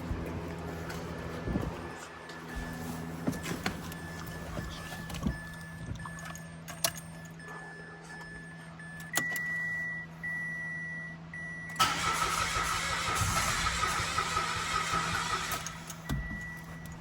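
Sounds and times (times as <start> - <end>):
electronic warning beeps: 1.3 - 11.8, 15.7 - 17.0
starter motor cranking engine: 11.8 - 16.1.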